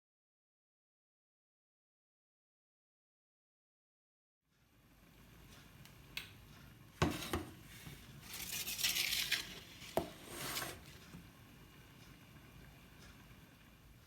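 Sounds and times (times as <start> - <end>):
dishes and utensils clattering: 7.0 - 11.1.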